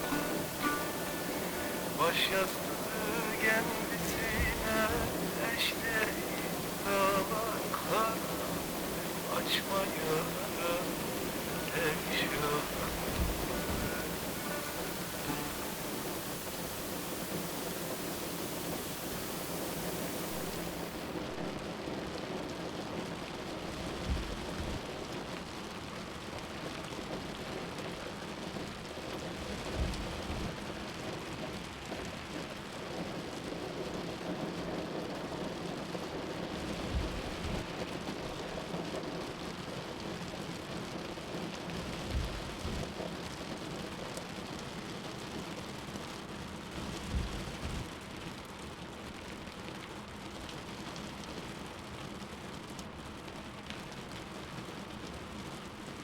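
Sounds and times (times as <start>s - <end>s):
low hum: 0.0s - 21.2s
rain and wet road noise: 0.0s - 56.0s.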